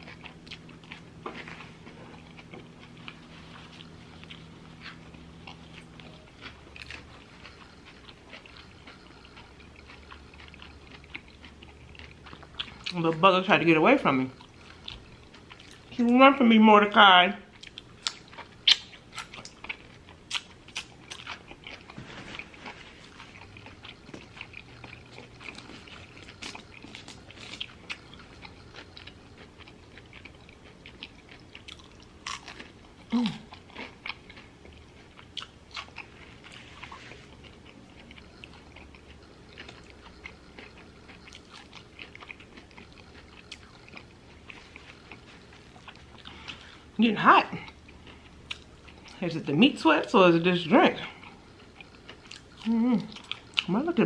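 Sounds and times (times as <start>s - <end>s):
chewing and biting food: 0.0s - 16.1s, 17.5s - 54.0s
wet mouth clicks and smacks: 17.7s - 19.6s.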